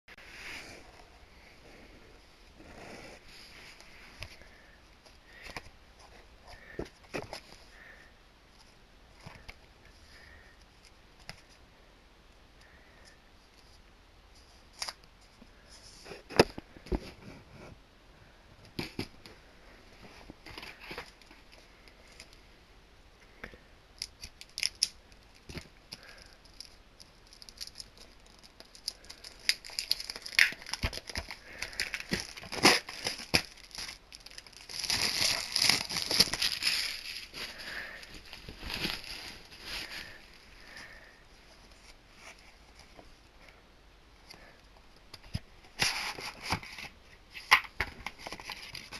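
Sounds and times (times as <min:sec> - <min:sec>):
plastic wrap crinkling and tearing: 0:24.0 - 0:40.3.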